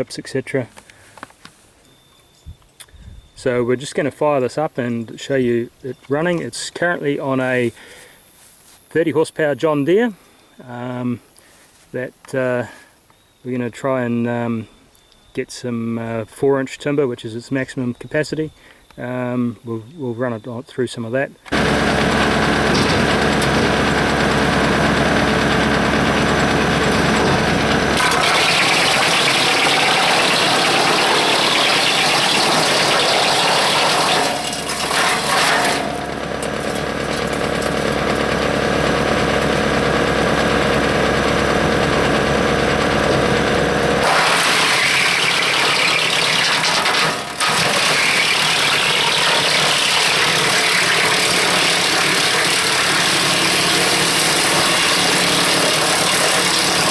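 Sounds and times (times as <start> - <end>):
tractor engine and wood chipper: 21.5 - 56.9.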